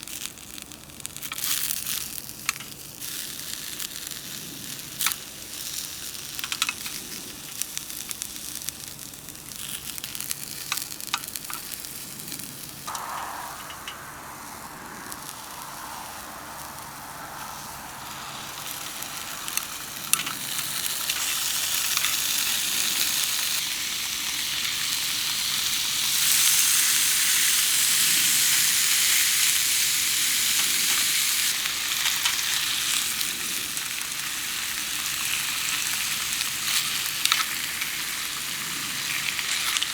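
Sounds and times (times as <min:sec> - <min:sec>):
food sizzling in a pan: 0:12.6 - 0:39.9.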